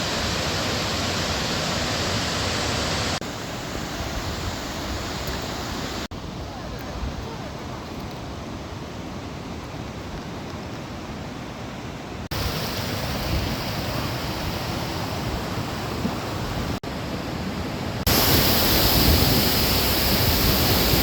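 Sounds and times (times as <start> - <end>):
waterfall rushing: 0.0 - 6.7, 12.3 - 16.8, 17.4 - 21.0.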